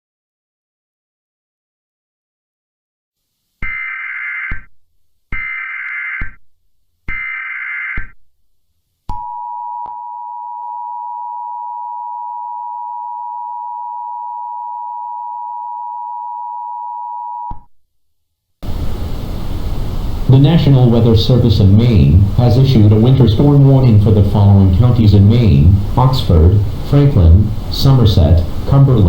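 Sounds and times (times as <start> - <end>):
warbling digital data tones: 3.6 - 4.7, 5.4 - 6.4.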